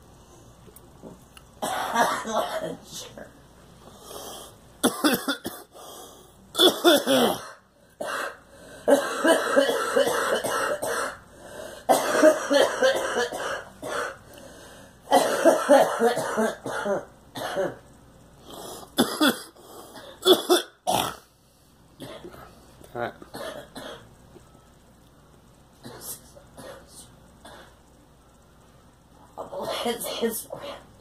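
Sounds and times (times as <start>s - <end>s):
girl coughing: 1.6s - 2.8s, 4.8s - 5.7s, 6.6s - 11.2s, 11.9s - 14.2s, 15.1s - 17.8s, 19.0s - 21.2s, 23.4s - 24.0s.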